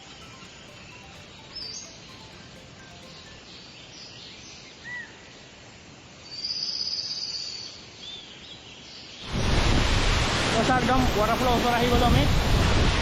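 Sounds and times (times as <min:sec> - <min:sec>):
high steady trill: 0:00.0 - 0:03.8
bird chirps: 0:00.0 - 0:05.2
waterfall rushing: 0:09.2 - 0:13.0.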